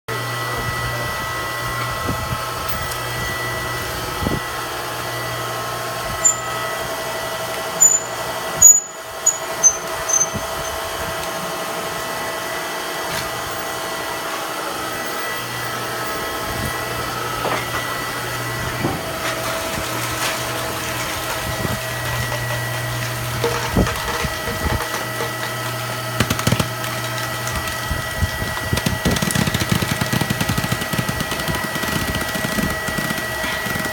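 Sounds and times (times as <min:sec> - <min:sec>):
baler motor humming: 0:13.4 - 0:33.9.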